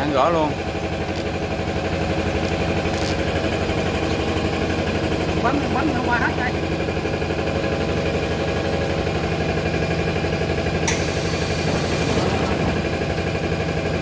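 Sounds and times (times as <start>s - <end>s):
machine mechanical hum: 0.0s - 14.0s.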